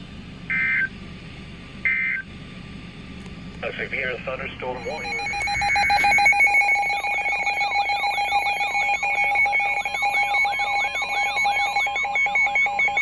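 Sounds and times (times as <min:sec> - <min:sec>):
swooping warble: 0:04.8 - 0:12.6
steady electronic alarm tone: 0:04.8 - 0:13.0.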